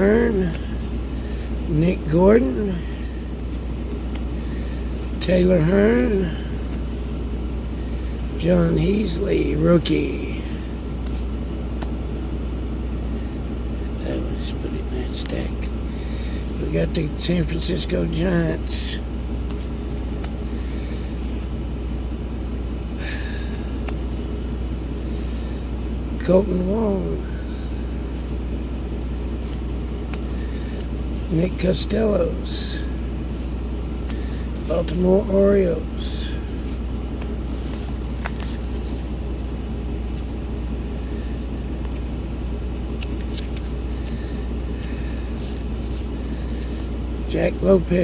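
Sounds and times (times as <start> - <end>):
low engine rumble: 0.0 - 48.0
cards rustling: 36.6 - 39.2, 42.7 - 47.0.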